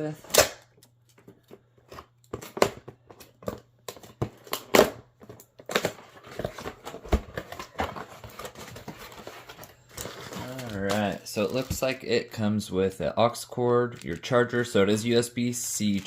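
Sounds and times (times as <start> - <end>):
packaging rustling: 1.0 - 12.1.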